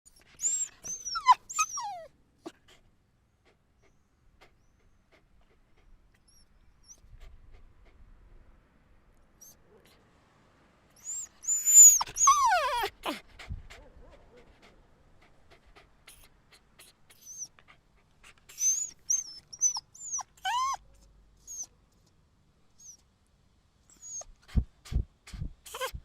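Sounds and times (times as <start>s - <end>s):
dog squeaky barks and whines: 0.1s - 2.1s, 11.0s - 13.2s, 17.1s - 17.5s, 18.5s - 21.7s, 23.9s - 24.3s, 25.7s - 26.0s.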